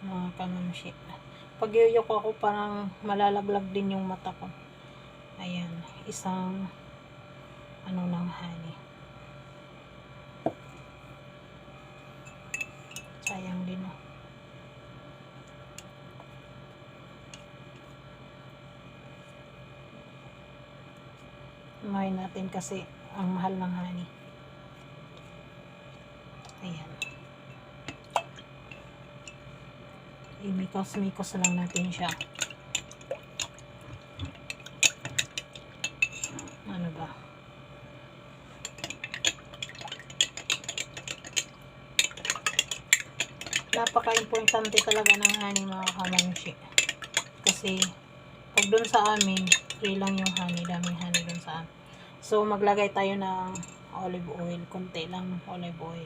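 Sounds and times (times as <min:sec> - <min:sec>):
low electrical hum: 0:00.0 - 0:56.0
metal spoon clicking on glass: 0:38.7 - 0:47.9.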